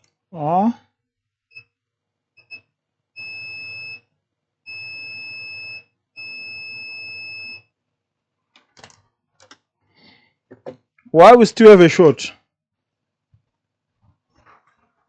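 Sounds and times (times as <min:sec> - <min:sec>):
multimeter continuity beep: 0:02.4 - 0:04.1, 0:04.7 - 0:07.7.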